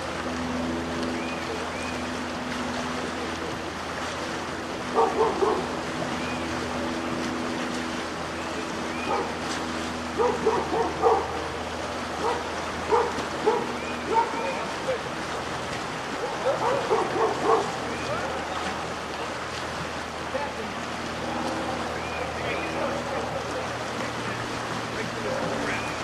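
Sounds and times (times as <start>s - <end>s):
creek rapids rushing: 0.0s - 26.0s
dog barking: 4.9s - 5.7s, 9.0s - 9.4s, 10.2s - 11.4s, 12.2s - 14.4s, 16.2s - 17.8s.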